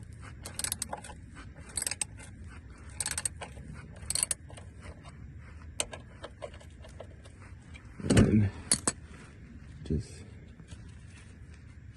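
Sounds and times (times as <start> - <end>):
ratchet clicking: 0.4 - 1.1, 1.7 - 2.2, 2.9 - 4.4.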